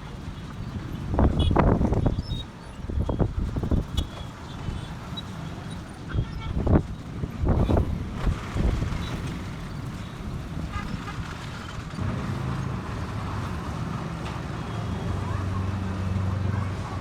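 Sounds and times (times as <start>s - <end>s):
vehicle engine hum: 0.0s - 17.0s
wind striking microphone: 0.7s - 4.2s.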